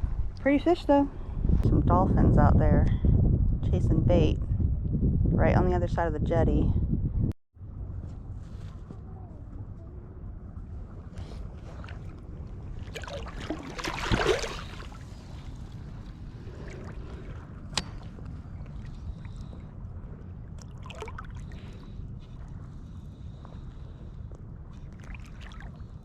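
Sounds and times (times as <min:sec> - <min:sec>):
wind rumble on microphone: 0:00.0 - 0:26.0
water sloshing and lapping: 0:09.9 - 0:26.0
rushing water splash: 0:12.8 - 0:18.0, 0:20.6 - 0:21.8.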